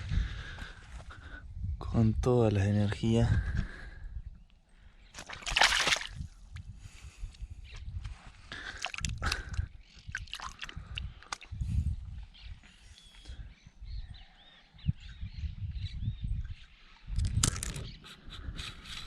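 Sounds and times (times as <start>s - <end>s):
bird chirping: 11.5s - 19.0s
small clicks and knocks: 17.2s - 18.0s.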